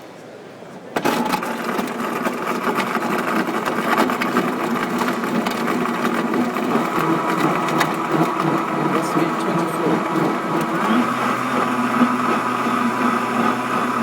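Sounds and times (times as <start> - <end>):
blender motor humming: 1.0 - 14.0.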